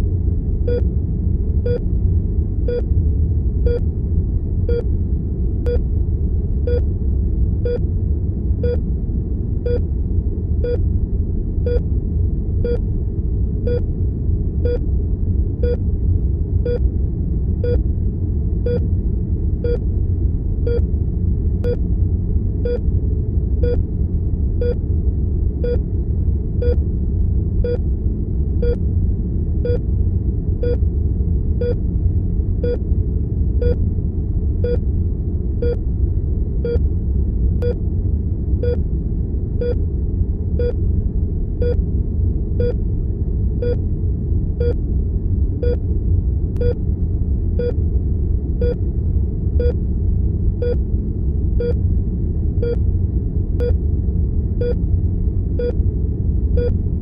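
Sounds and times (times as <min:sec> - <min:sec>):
low room rumble: 0:00.0 - 0:57.0
heart monitor beeping: 0:19.6 - 0:19.8, 0:29.6 - 0:29.8, 0:34.6 - 0:34.8, 0:36.6 - 0:36.8, 0:46.6 - 0:46.8, 0:50.6 - 0:50.8, 0:54.6 - 0:54.8, 0:56.6 - 0:56.8.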